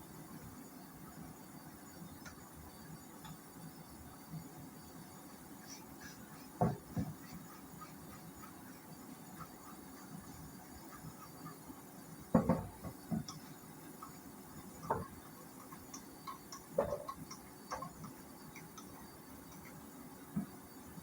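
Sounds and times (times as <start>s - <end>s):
hard objects knocking and clattering: 12.3s - 13.4s, 14.8s - 18.7s.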